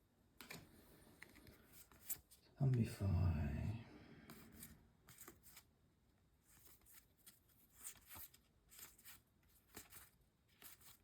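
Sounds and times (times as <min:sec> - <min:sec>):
trading cards rustling and scraping: 0:00.4 - 0:02.4, 0:04.3 - 0:05.7, 0:06.4 - 0:11.0.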